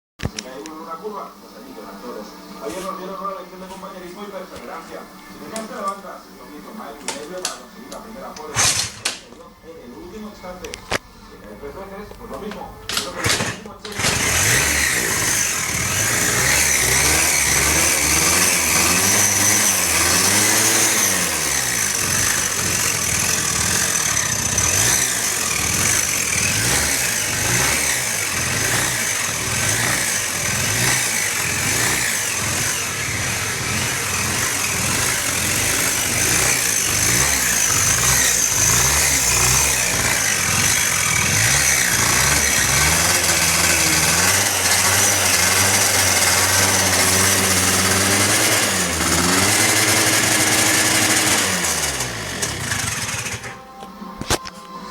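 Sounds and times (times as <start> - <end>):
engine revving: 8.5 - 9.1, 13.0 - 53.7.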